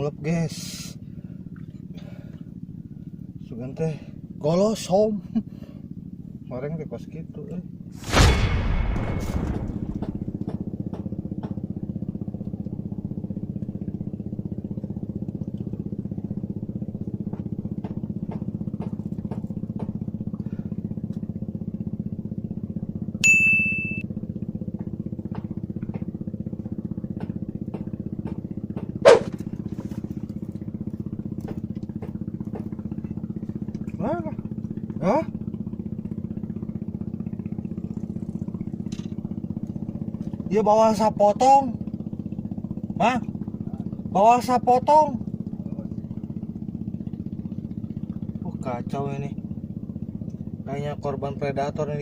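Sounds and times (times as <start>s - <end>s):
small engine running: 0.0s - 52.0s
short high beep: 23.2s - 24.0s.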